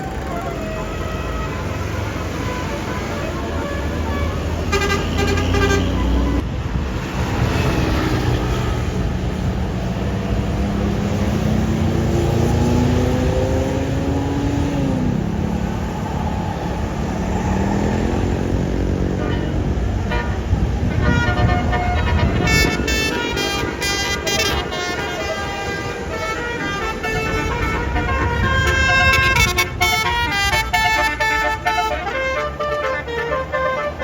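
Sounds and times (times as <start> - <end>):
musical air horn playing a tune: 0.0 - 6.4, 19.2 - 34.0
bus engine rumble: 0.0 - 34.0
traffic: 0.0 - 34.0.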